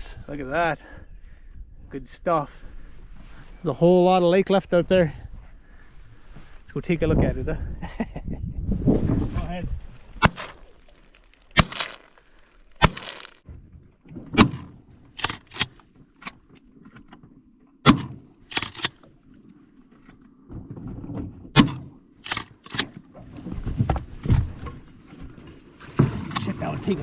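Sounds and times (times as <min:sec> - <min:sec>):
shotgun shots: 0:12.8 - 0:13.3, 0:14.4 - 0:15.8, 0:17.9 - 0:19.0, 0:21.6 - 0:23.0.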